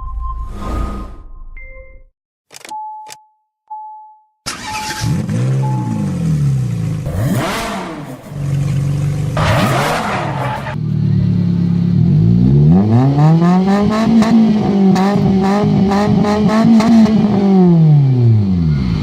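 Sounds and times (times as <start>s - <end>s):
car engine revving: 4.5s - 19.0s.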